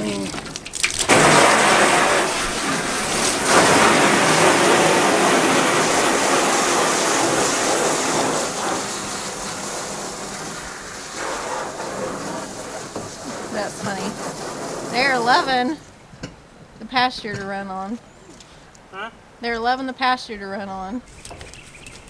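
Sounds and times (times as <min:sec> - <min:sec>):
water splashing from a hose: 0:00.0 - 0:15.8.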